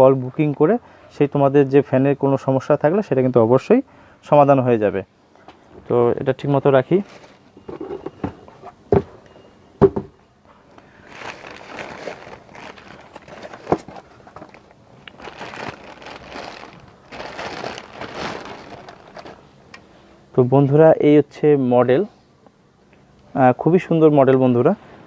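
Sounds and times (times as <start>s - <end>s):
packaging rustling and crinkling: 6.8s - 9.2s, 10.9s - 19.6s
parts knocking and clicking: 7.6s - 10.2s.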